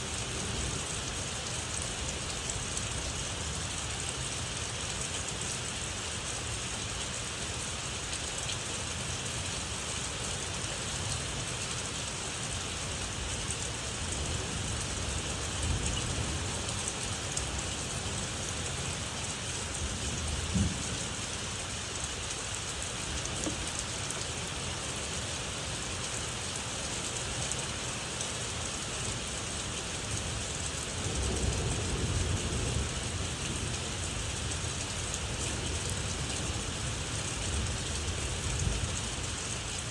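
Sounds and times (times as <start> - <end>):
rain hissing: 0.0 - 39.9
low thunder rumbling: 13.6 - 21.6, 30.9 - 39.4.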